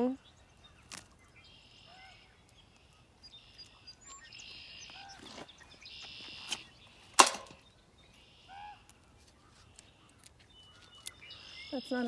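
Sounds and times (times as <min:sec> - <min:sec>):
sharp knock: 0:07.2 - 0:07.6.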